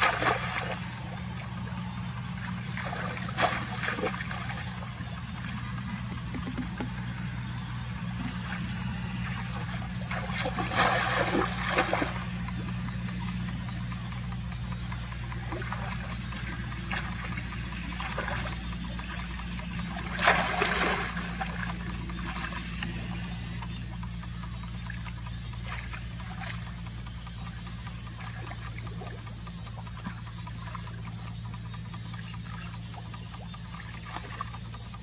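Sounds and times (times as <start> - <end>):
water trickling and splashing: 0.0 - 1.6, 8.2 - 12.3, 15.4 - 23.2, 28.1 - 31.2
steady low hum: 0.0 - 35.0.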